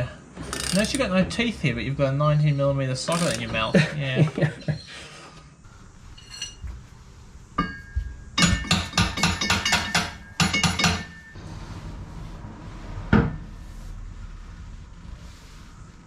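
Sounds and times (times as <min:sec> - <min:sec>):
metal tools clinking on bolts: 0:00.5 - 0:01.0, 0:03.1 - 0:03.7, 0:06.2 - 0:06.6.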